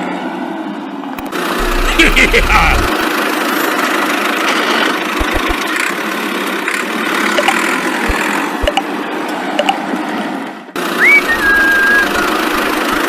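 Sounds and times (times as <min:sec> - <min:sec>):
small tractor engine running: 0:01.2 - 0:08.8, 0:10.8 - 0:13.0
soft low thumps: 0:05.2 - 0:05.6.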